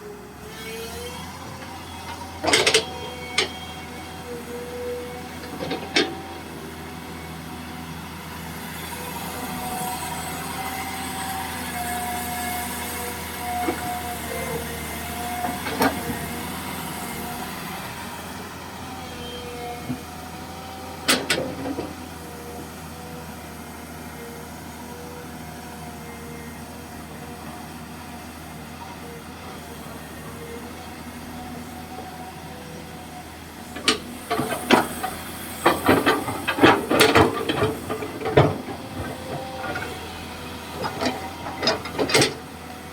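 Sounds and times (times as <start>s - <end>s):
excavator engine running: 0.1s - 42.9s
steady hydraulic whine: 29.0s - 42.8s.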